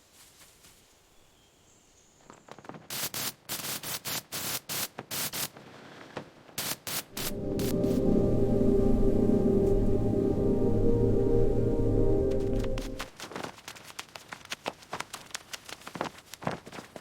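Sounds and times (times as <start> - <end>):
music: 7.1 - 13.1.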